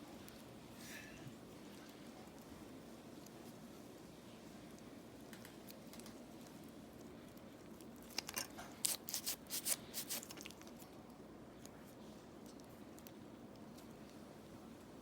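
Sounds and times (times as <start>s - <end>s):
room hiss: 8.8s - 10.4s.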